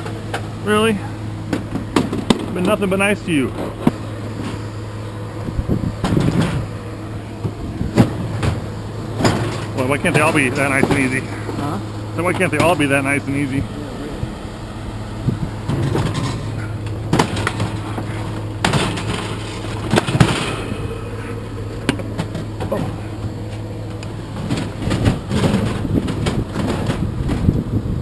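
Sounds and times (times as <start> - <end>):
steady low hum: 0.0 - 28.0
metal knocks and clatters: 5.8 - 6.7, 7.4 - 11.3, 15.6 - 20.8, 21.8 - 27.5.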